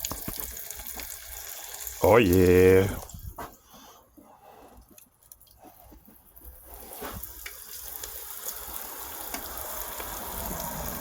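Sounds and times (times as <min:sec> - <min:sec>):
faint grease pops: 0:00.0 - 0:01.2, 0:06.4 - 0:10.2
meat sizzling in a pan: 0:00.0 - 0:03.0, 0:06.7 - 0:11.0.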